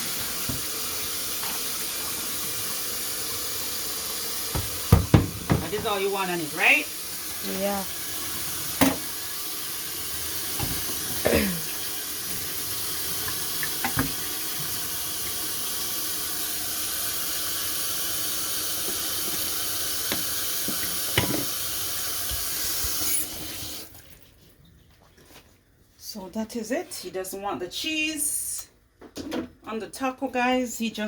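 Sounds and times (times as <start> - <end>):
tap water running: 0.0 - 24.3.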